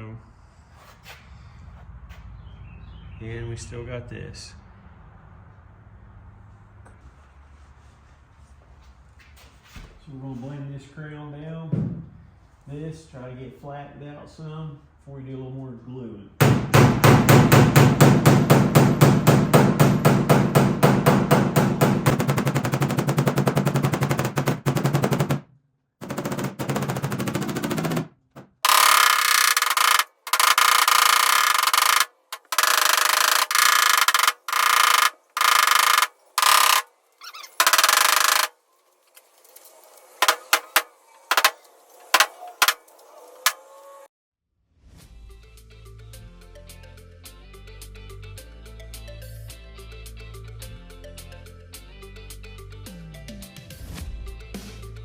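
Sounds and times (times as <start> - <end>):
hammer tapping on metal: 26.0 - 36.8, 37.6 - 38.5, 40.2 - 41.6, 42.2 - 42.8
electric hum bursts: 28.6 - 38.5.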